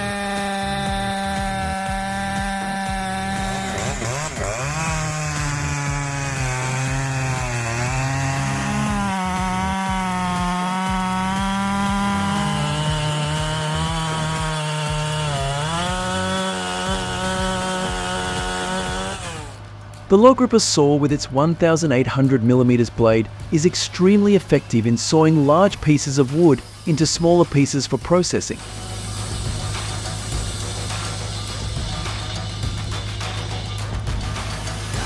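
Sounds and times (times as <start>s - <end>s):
chainsaw cutting wood: 0.0s - 35.0s.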